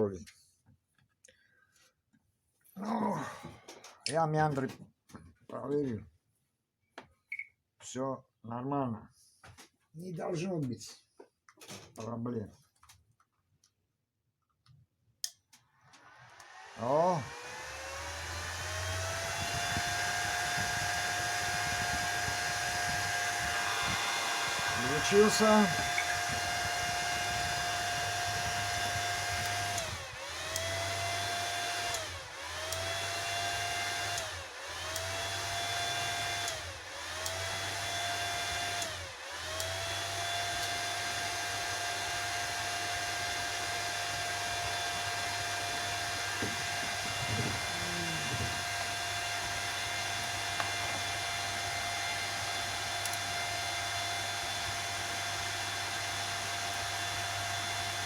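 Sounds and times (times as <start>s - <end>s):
constant high whine: 15.9s - 30.6s
cooling fan noise: 16.3s - 38.2s, 44.4s - 54.1s.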